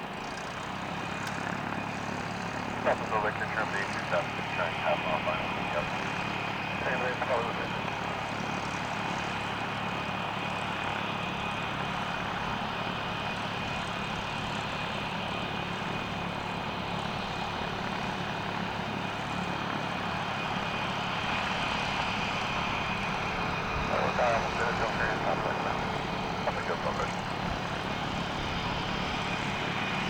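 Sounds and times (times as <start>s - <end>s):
jet engines hissing with whine: 0.6s - 30.0s.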